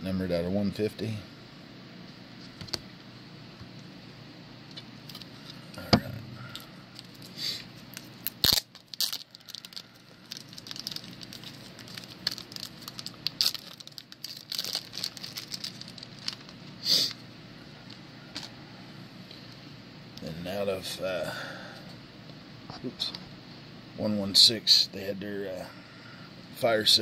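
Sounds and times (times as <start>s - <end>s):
packaging crinkling and tearing: 7.0s - 17.2s.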